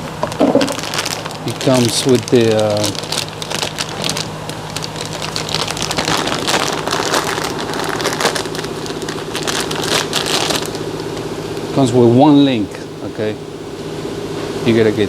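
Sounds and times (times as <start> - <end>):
packaging crackling and rustling: 0.0 - 11.7
low hum: 0.0 - 14.6.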